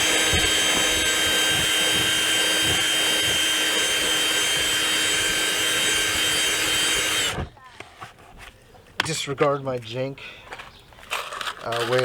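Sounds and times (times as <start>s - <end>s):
electric drill running: 0.0s - 7.5s.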